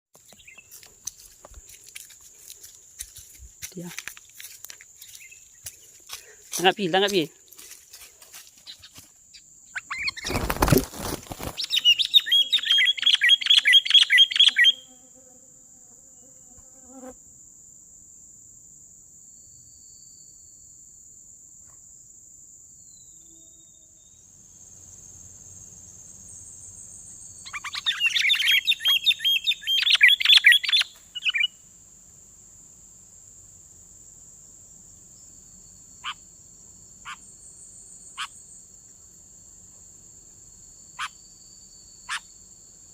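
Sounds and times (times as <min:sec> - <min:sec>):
high insect whine: 0:00.2 - 0:42.9
birds harsh chattering calls: 0:09.8 - 0:14.6, 0:27.5 - 0:31.5
wings flapping: 0:10.0 - 0:12.0.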